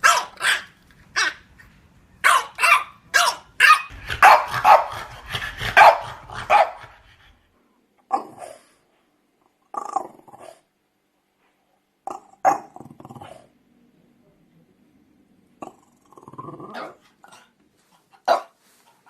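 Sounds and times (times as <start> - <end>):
dog barking: 0.0 - 1.4, 2.2 - 7.0, 18.3 - 18.6.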